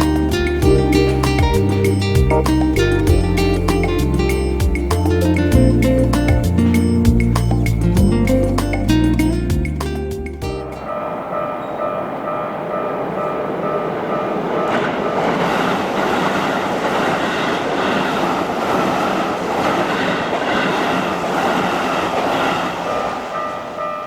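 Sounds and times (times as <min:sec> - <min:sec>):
level crossing warning bell: 0:00.0 - 0:09.5, 0:10.5 - 0:15.5, 0:23.3 - 0:24.0
train wheels rumbling on rails: 0:10.4 - 0:24.0.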